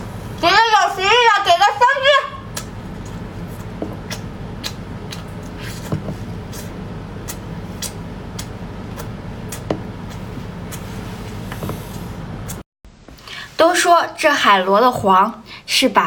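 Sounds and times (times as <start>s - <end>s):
steady low hum: 0.0s - 16.0s
food crackling while chewed: 2.6s - 12.6s.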